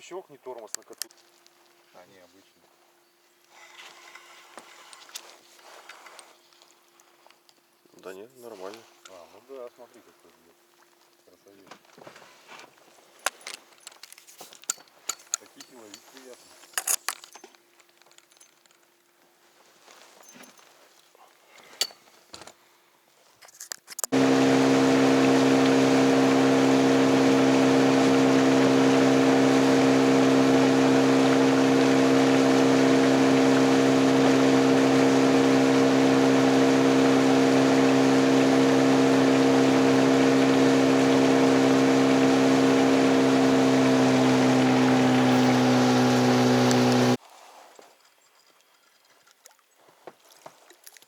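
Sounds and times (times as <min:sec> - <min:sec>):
outboard motor running: 0:24.1 - 0:47.2.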